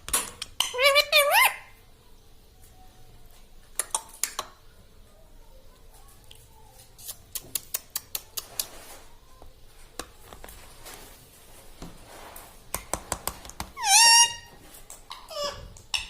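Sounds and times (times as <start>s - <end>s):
parrot call: 0.7s - 1.8s, 13.8s - 14.5s, 15.1s - 16.0s.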